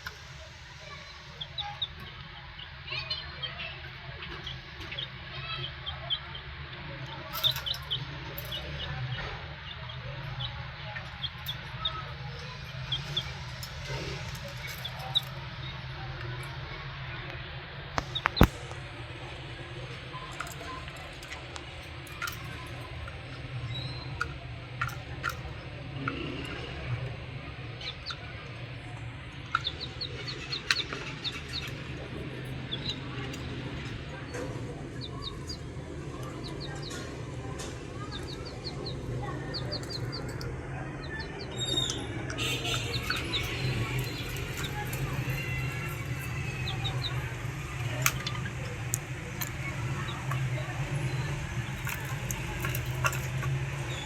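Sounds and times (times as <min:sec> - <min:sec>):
steady low hum: 0:00.0 - 0:54.0
budgerigars clicking: 0:18.0 - 0:54.0
budgerigars chirping: 0:27.8 - 0:37.1, 0:41.0 - 0:48.6.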